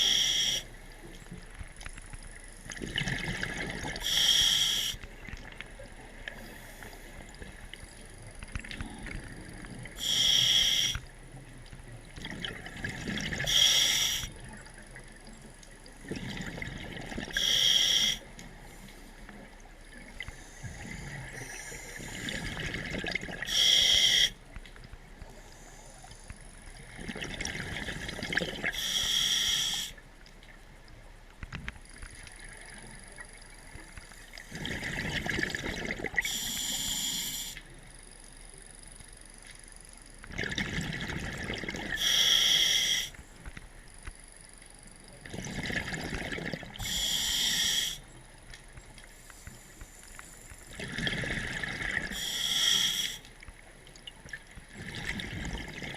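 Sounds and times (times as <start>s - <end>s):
regulator hiss: 0.0s - 0.8s, 4.0s - 5.0s, 9.9s - 11.1s, 13.4s - 14.3s, 17.4s - 19.1s, 23.5s - 24.4s, 28.7s - 30.0s, 36.2s - 37.6s, 42.0s - 43.3s, 46.8s - 48.1s, 52.1s - 53.3s
exhaled bubbles underwater: 2.6s - 4.2s, 11.9s - 18.3s, 19.4s - 24.0s, 26.6s - 28.8s, 32.2s - 36.8s, 40.2s - 42.2s, 45.2s - 48.4s, 50.5s - 55.9s.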